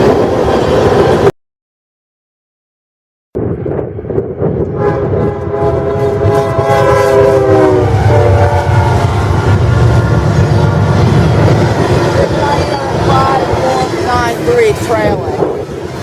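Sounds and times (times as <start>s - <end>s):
low rumble of passing train: 0.0s - 1.3s, 3.4s - 16.0s
locomotive horn chord: 4.7s - 14.1s.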